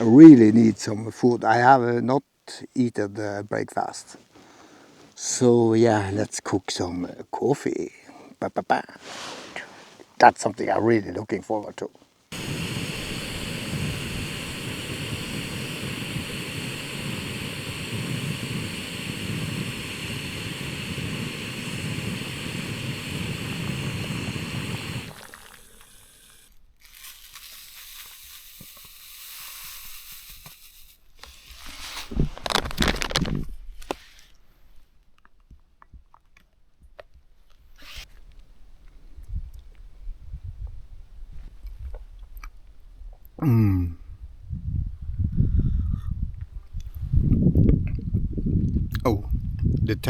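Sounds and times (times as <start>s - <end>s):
gas stove burner hissing: 12.3s - 31.4s
handling food and gear: 30.5s - 39.8s.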